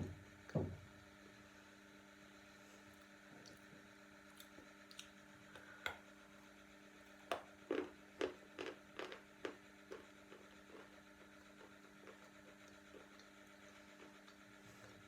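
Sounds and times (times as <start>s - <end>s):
faint steady hum: 0.0s - 15.0s
chalk crunching as chewed: 4.3s - 5.2s, 7.2s - 15.0s.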